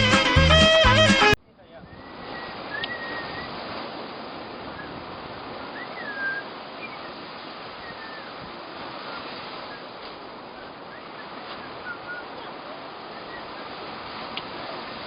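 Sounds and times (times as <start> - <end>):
rushing water: 0.0 - 15.0
bird whistles: 1.9 - 3.6, 4.7 - 5.0, 5.7 - 7.2, 7.8 - 8.3, 10.6 - 12.3, 13.1 - 13.7.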